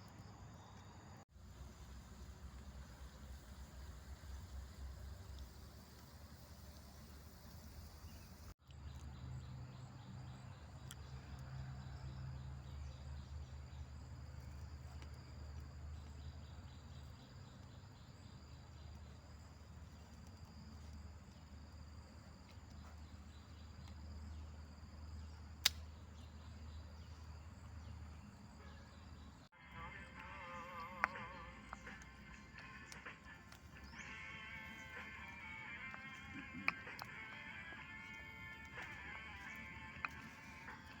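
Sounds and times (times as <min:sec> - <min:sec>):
insects trilling: 0:00.1 - 0:08.6, 0:09.4 - 0:41.0
sharp click: 0:25.6 - 0:25.9.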